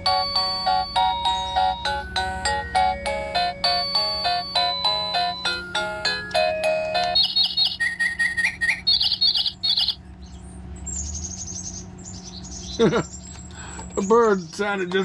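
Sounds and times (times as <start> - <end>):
doorbell chime melody: 0.0 - 7.6
electronic chirp trills: 0.0 - 10.0
birds chirping: 0.4 - 2.9, 4.6 - 15.0.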